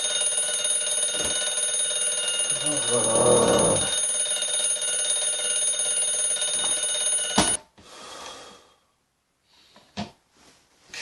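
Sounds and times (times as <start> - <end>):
alarm clock click: 0.0 - 7.6
alarm clock ringing: 0.0 - 7.6.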